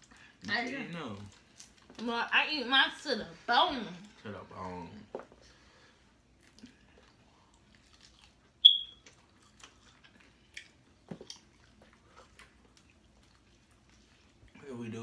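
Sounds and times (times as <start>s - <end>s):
chewing and crunching: 0.0s - 2.4s, 3.8s - 14.7s
short high-pitched beep: 8.6s - 9.0s.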